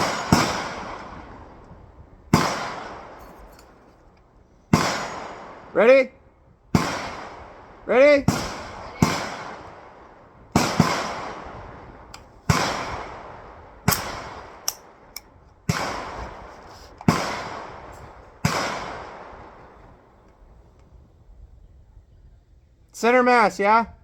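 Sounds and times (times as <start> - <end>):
rifle gunshots echoing: 0.0 - 1.6, 2.3 - 3.2, 4.7 - 5.9, 6.7 - 16.4, 17.0 - 20.0.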